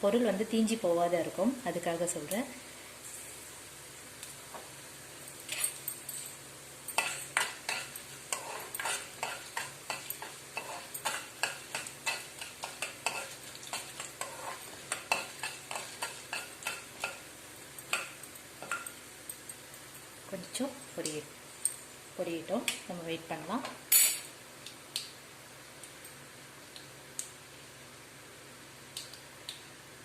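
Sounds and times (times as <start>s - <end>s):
faint oil sizzle: 0.0s - 30.0s
spoon stirring in pan: 6.9s - 19.0s
seeds popping in hot oil: 6.9s - 19.1s.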